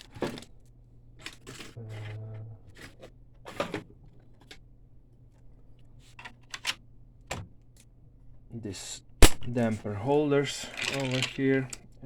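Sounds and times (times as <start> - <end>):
plastic parts clicking and clattering: 10.5 - 12.0.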